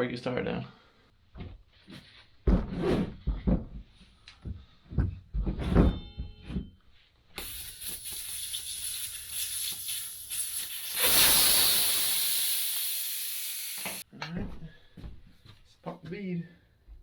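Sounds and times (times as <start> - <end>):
air hissing from tire: 7.4 - 14.0.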